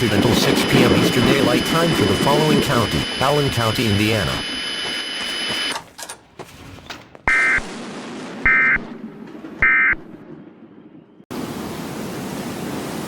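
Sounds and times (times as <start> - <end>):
alert data tone bursts: 0.0 - 5.8.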